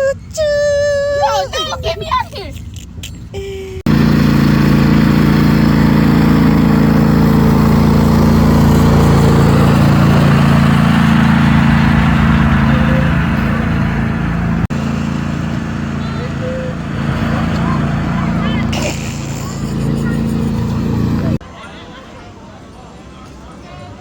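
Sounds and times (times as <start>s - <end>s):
small engine droning: 3.8s - 21.4s.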